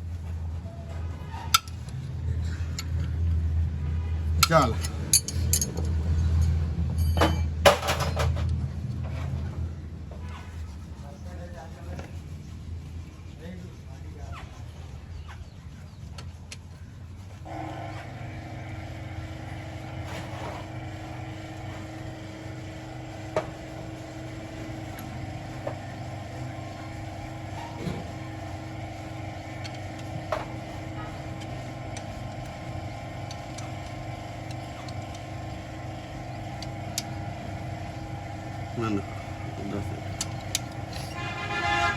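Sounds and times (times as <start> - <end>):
car engine idling: 17.4 - 41.9
sharp engine clicks: 17.4 - 41.9.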